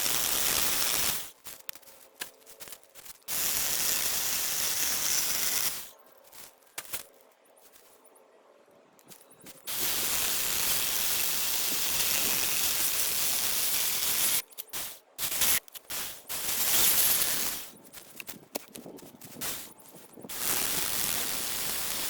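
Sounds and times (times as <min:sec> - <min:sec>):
aerosol spray hissing: 0:00.0 - 0:01.3, 0:03.3 - 0:05.9, 0:09.6 - 0:17.7, 0:19.4 - 0:19.7, 0:20.3 - 0:22.0.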